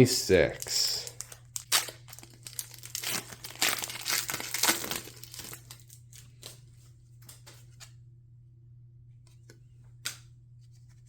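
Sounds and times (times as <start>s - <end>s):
foil wrapper crinkling and tearing: 0.4s - 6.6s.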